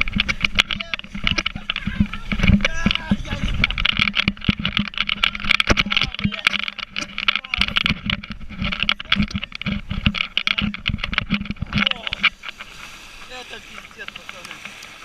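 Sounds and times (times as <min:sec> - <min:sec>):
boat engine humming: 0:00.0 - 0:15.0
wind: 0:00.0 - 0:15.0
water spray hissing: 0:12.3 - 0:15.0.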